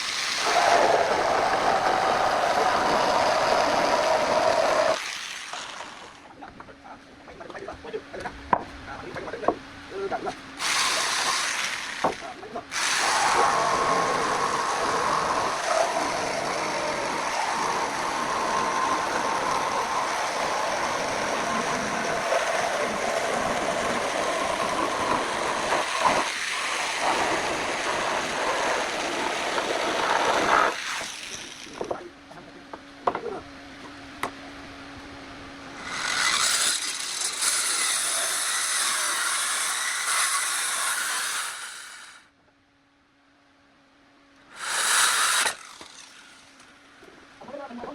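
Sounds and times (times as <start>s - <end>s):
jigsaw cutting hardwood: 0.0s - 6.2s, 10.6s - 31.9s, 35.8s - 42.3s, 44.5s - 46.6s.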